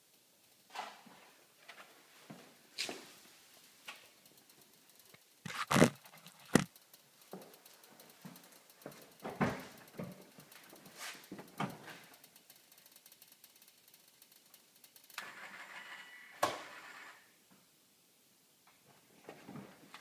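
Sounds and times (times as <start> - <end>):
faint rapid ticking: 3.4 - 15.2.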